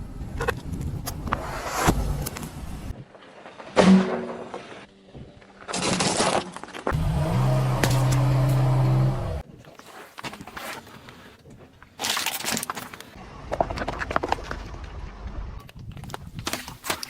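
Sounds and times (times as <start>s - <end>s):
car engine running: 6.9s - 9.4s.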